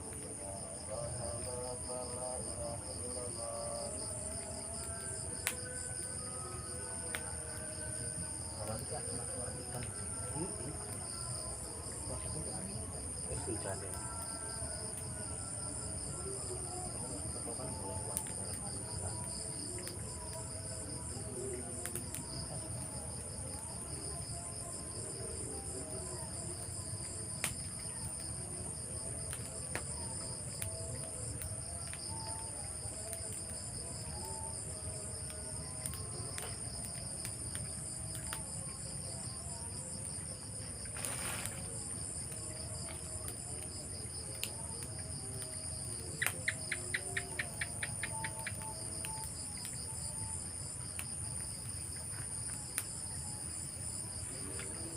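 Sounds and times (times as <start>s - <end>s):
crickets and insects chirring: 0.0s - 54.9s
rustle: 40.9s - 41.8s.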